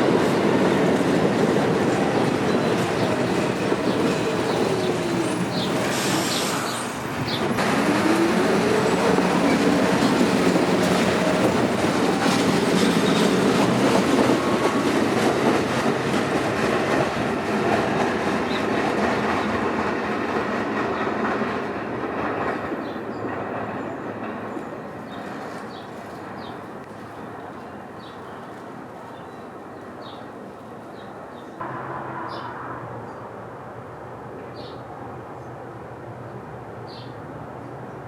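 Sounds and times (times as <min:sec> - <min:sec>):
train wheels clacking over rail joints: 0:00.0 - 0:26.5.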